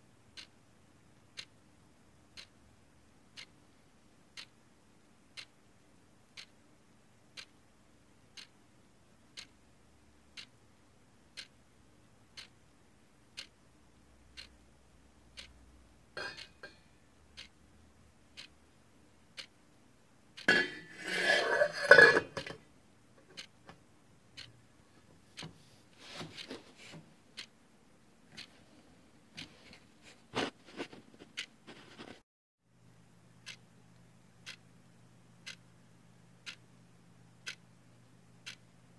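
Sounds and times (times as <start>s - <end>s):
clock ticking: 0.3s - 0.6s, 1.2s - 1.6s, 2.2s - 3.7s, 4.3s - 4.6s, 5.2s - 5.6s, 6.3s - 22.6s, 23.2s - 25.6s, 26.2s - 28.6s, 29.3s - 29.8s, 33.4s - 34.7s, 35.4s - 35.7s, 36.4s - 37.8s, 38.4s - 38.8s
kitchenware clattering: 20.5s - 22.6s.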